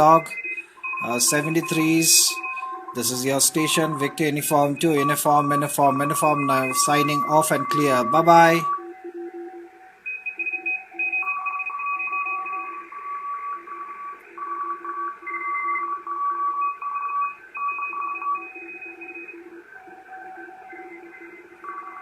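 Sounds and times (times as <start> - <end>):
overlapping morse code beeps: 0.0 - 22.0.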